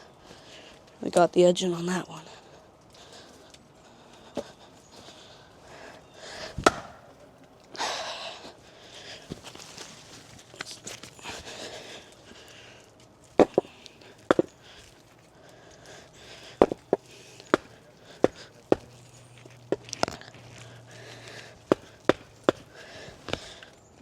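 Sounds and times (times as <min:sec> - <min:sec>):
rock hammering an axe head: 0:06.6 - 0:07.1, 0:13.4 - 0:13.7, 0:14.3 - 0:14.5, 0:16.6 - 0:18.9.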